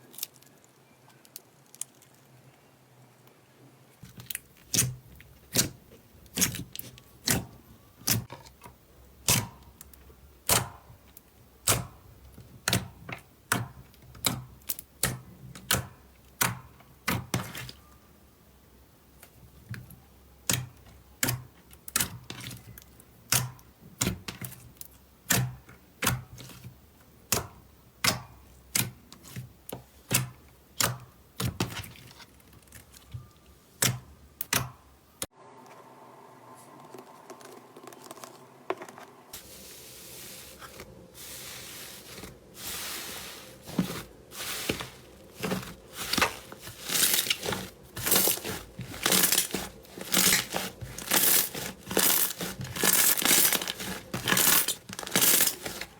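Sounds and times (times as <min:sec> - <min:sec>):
slime crackling and crunching: 0:41.3 - 0:55.9.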